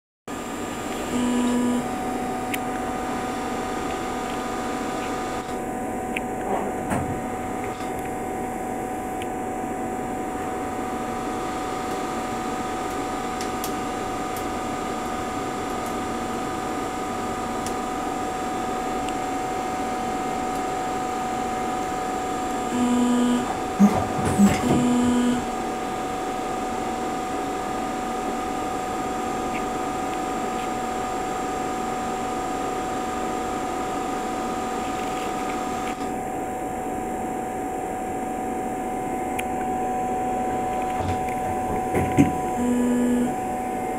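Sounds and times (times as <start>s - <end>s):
lathe machine hum: 0.3s - 43.9s
short low tone: 1.1s - 2.2s, 22.7s - 25.5s, 42.4s - 43.9s.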